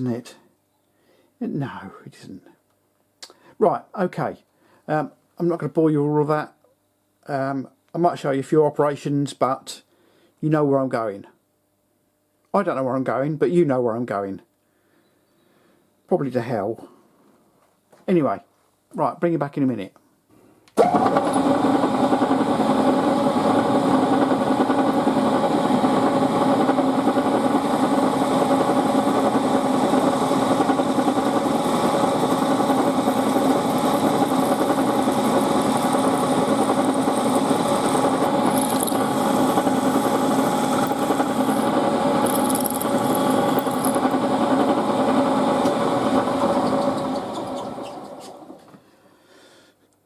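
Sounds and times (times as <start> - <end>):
milling machine spindle running: 20.8 - 48.6
high scratching of cutting: 28.3 - 44.1.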